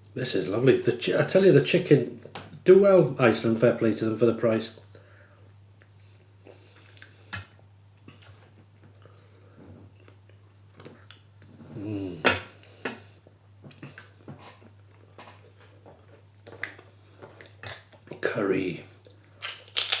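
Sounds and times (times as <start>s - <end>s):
man chewing food: 9.9s - 11.6s, 12.6s - 18.0s
man humming: 11.7s - 12.4s.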